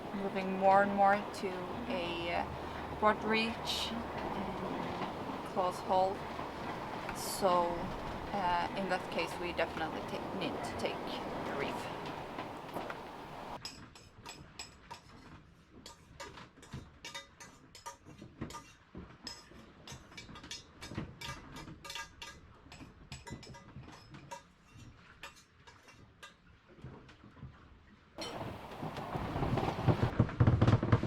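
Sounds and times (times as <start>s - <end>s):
loud steady rush of noise: 0.0s - 13.6s
dishes and cutlery clinking: 15.9s - 26.4s.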